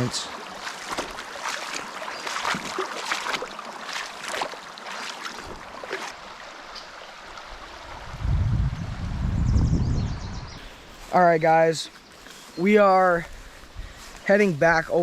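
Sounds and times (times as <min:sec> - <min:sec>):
water sloshing splashes: 0:00.0 - 0:07.6
creek water running: 0:00.0 - 0:09.1, 0:10.6 - 0:15.0.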